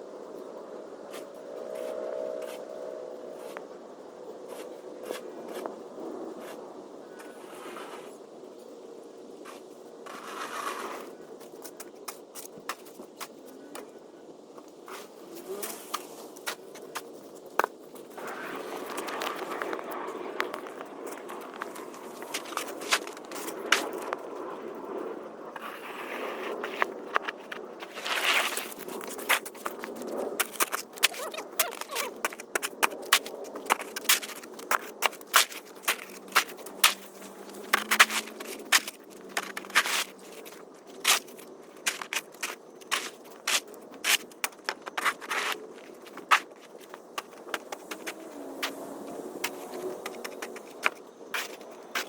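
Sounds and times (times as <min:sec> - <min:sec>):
snow shovel scraping pavement: 0:07.3 - 0:08.2, 0:09.5 - 0:11.2, 0:14.9 - 0:16.8, 0:25.6 - 0:26.8, 0:27.8 - 0:52.0
snow shovel scraping: 0:10.1 - 0:11.1
footsteps crunching in snow: 0:25.6 - 0:52.0.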